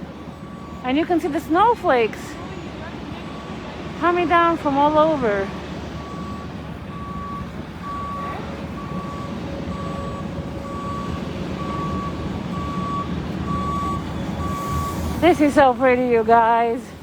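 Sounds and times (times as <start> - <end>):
low engine rumble: 0.0 - 17.0
traffic rumble: 0.0 - 17.0
vehicle backup alarm beeping: 0.0 - 17.0.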